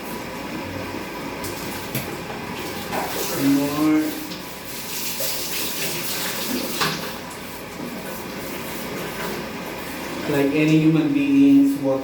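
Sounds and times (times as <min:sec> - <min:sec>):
water running and splashing: 0:01.5 - 0:10.9.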